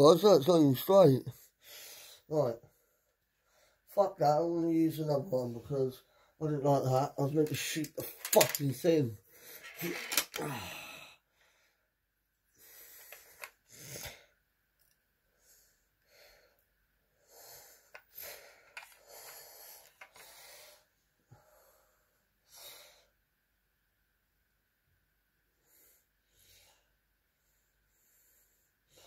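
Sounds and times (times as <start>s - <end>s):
person breathing heavily: 1.3s - 3.9s, 10.4s - 11.9s, 12.6s - 14.4s, 15.3s - 23.1s.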